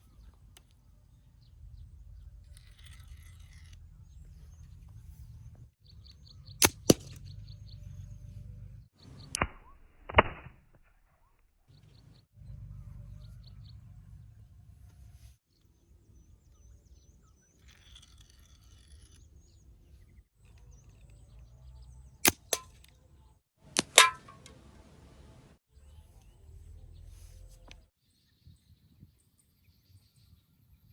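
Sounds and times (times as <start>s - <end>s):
slingshot snapping cracks: 6.6s - 7.2s, 22.2s - 23.0s, 23.8s - 24.5s
metallic ring: 23.9s - 24.5s.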